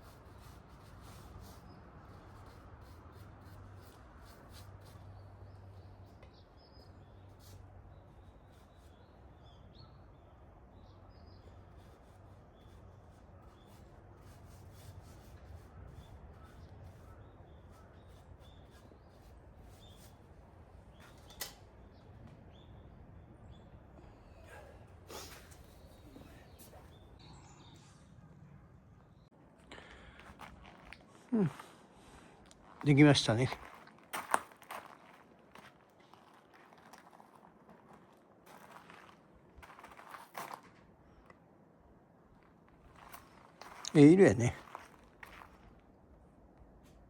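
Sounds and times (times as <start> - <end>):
faint bird calls: 5.2 - 20.2.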